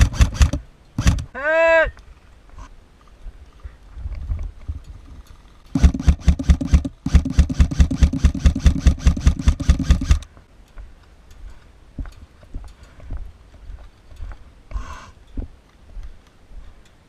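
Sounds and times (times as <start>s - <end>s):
airsoft rifle firing bursts: 0.0s - 1.3s, 5.7s - 10.2s.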